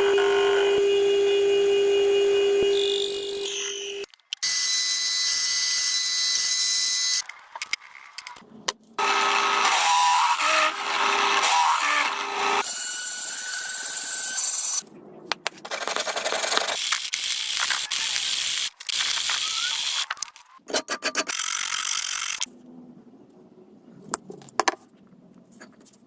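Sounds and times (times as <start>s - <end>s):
workshop tool cutting material: 9.0s - 14.8s.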